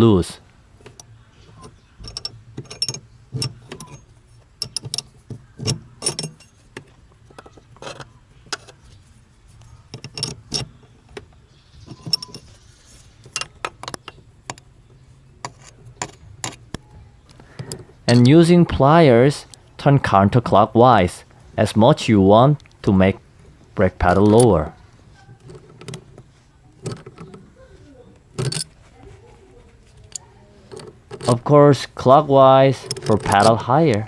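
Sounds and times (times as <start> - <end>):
spanner clicking on metal nut: 0.8 - 4.0, 4.6 - 6.6.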